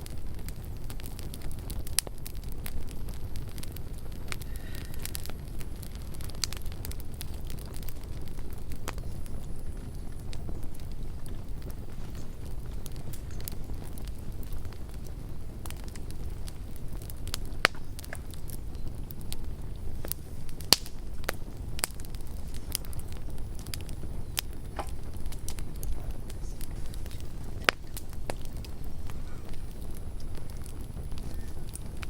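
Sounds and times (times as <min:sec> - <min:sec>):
campfire crackling and popping: 0:00.0 - 0:32.0
low steady rumble: 0:00.0 - 0:32.0.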